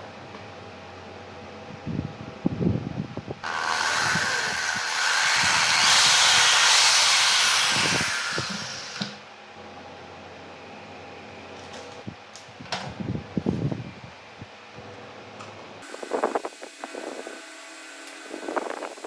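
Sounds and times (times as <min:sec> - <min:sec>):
loud steady hiss: 0:03.4 - 0:09.3, 0:15.8 - 0:19.0.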